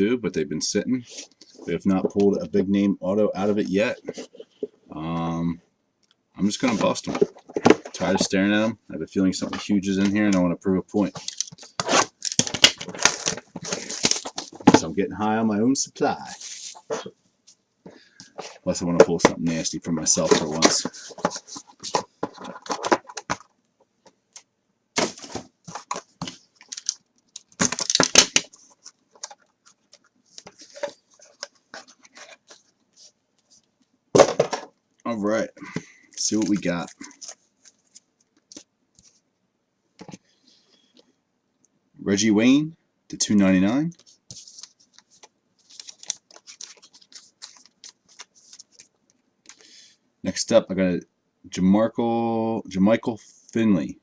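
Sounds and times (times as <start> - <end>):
plastic wrap and cardboard crinkling: 11.0 - 14.9, 25.0 - 33.1, 44.0 - 49.0.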